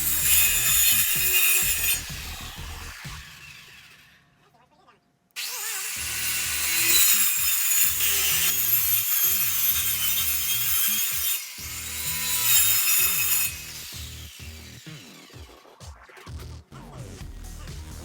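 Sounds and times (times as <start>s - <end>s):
background music with a beat: 0.0s - 3.3s, 14.0s - 18.0s
power saw cutting plastic: 0.0s - 4.4s, 5.4s - 15.8s.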